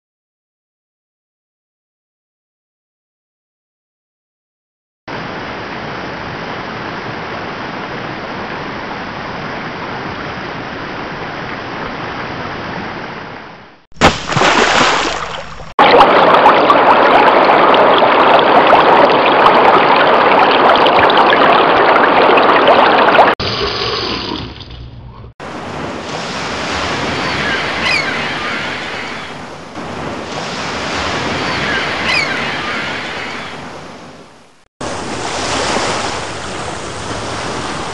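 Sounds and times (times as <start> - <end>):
rush of flowing water: 5.1 - 13.4, 14.0 - 24.0, 25.4 - 37.9
water splash: 13.9 - 24.7, 25.4 - 33.6, 34.8 - 37.9
water flowing: 14.0 - 24.8, 25.5 - 37.9.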